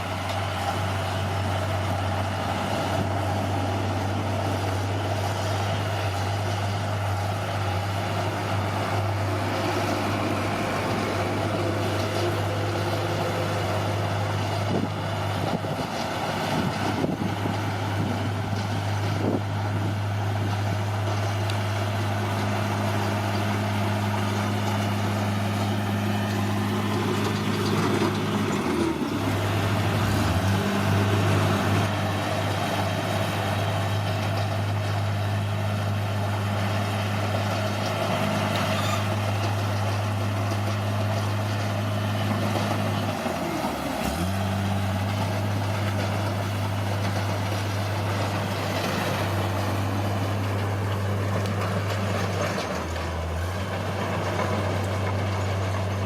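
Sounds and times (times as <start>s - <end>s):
bulldozer diesel engine running: 0.0s - 56.0s.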